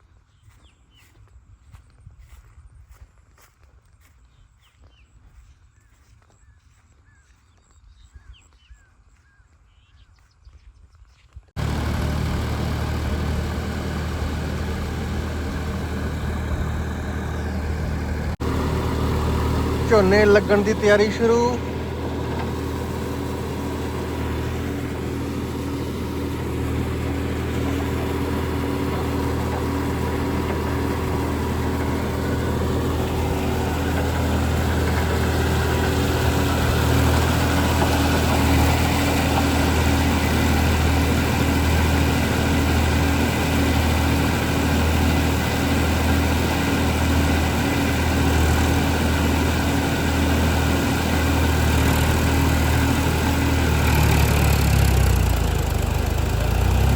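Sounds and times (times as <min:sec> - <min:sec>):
tractor engine humming: 0:11.6 - 0:56.9.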